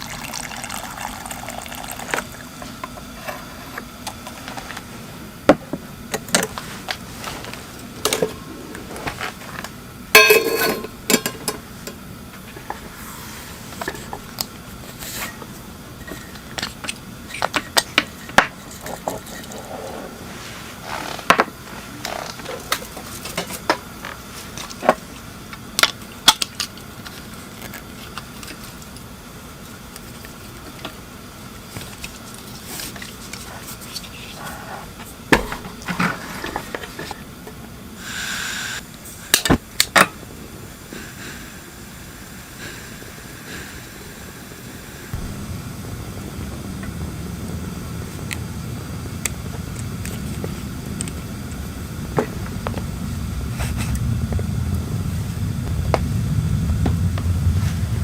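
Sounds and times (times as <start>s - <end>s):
low background hum: 0.0s - 58.0s
metal cookware clinking: 10.2s - 11.6s
hiss-like scrape: 12.7s - 14.1s, 40.9s - 41.8s, 42.5s - 46.6s.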